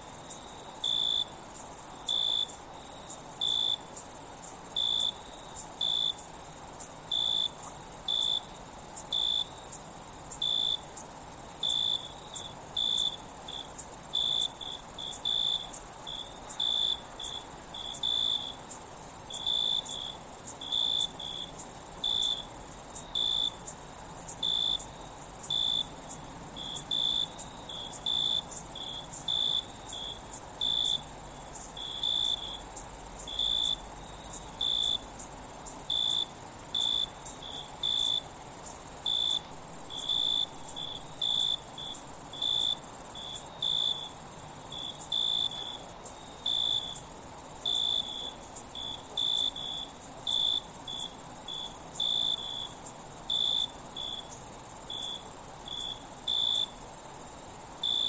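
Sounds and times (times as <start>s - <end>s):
crickets chirping: 0.0s - 58.0s
insect high-pitched trill: 0.1s - 58.0s.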